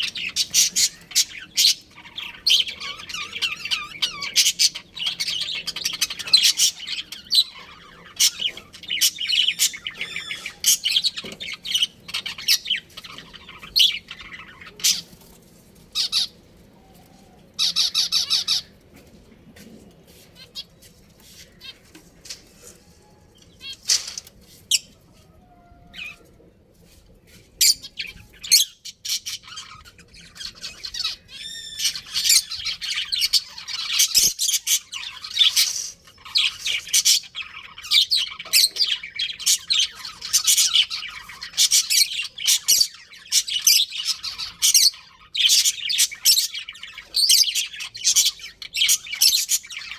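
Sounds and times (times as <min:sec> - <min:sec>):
budgerigars chirping: 0:00.0 - 0:15.2, 0:16.0 - 0:16.4, 0:17.6 - 0:18.7, 0:27.6 - 0:49.9.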